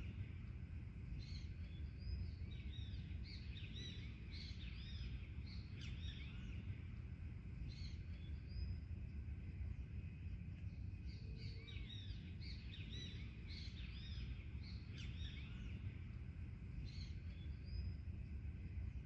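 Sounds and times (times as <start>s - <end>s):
low background rumble: 0.0s - 19.0s
birds calling and chirping: 1.2s - 6.7s, 11.0s - 16.2s.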